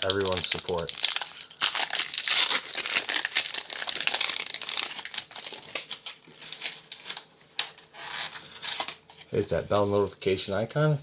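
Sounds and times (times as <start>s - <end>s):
foil wrapper crinkling: 0.0s - 10.4s.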